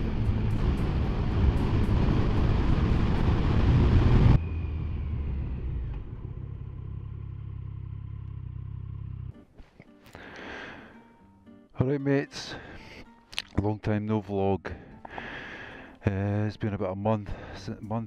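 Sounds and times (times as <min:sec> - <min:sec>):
wind rush on microphone: 0:00.0 - 0:04.4
motorcycle engine running: 0:00.0 - 0:09.4.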